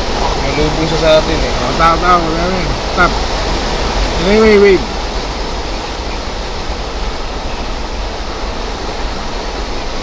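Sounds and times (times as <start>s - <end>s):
car driving through floodwater: 0.0s - 10.0s.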